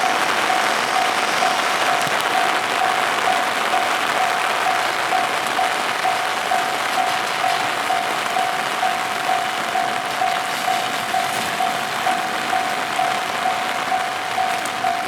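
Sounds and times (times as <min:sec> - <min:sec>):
heavy rain: 0:00.0 - 0:15.0
level-crossing alarm tone: 0:00.0 - 0:15.0.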